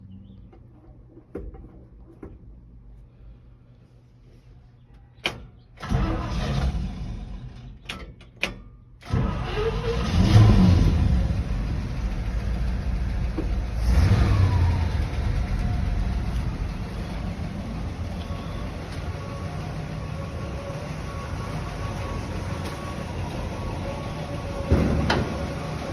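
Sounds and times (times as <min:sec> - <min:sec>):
engine revving and idling: 0:05.8 - 0:07.8, 0:09.0 - 0:25.9
starter motor cranking: 0:05.8 - 0:07.8, 0:09.0 - 0:25.9.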